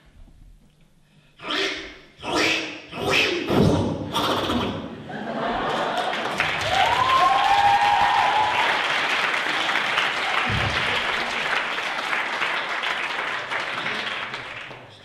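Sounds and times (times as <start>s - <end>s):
audience applauding: 5.1s - 15.0s.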